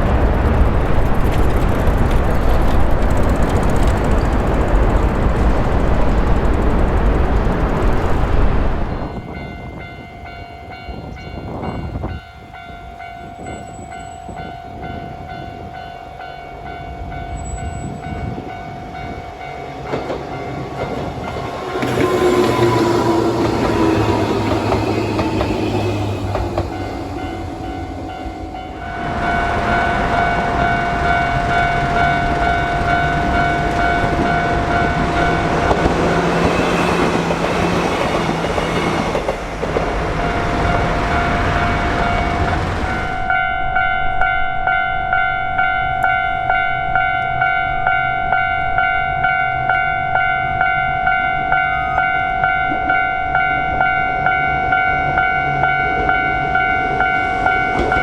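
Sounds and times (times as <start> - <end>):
train rushing on rails: 0.0 - 58.0
level crossing alarm ringing: 12.1 - 39.0.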